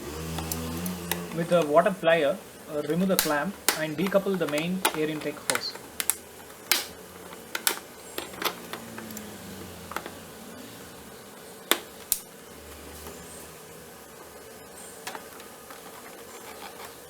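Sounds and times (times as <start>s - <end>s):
plastic hose being worked loose: 0.0s - 1.9s, 2.9s - 10.2s, 15.0s - 17.0s.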